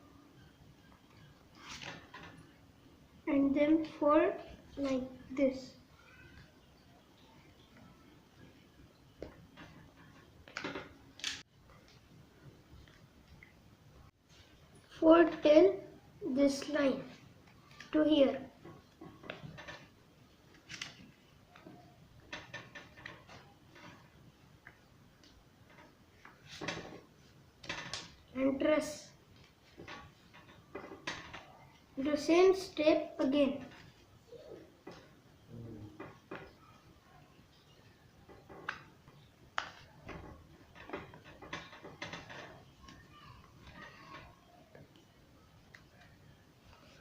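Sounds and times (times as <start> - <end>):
paper rustling and crinkling: 1.5 - 2.1
paper rustling and creasing: 1.5 - 2.3, 20.5 - 21.8.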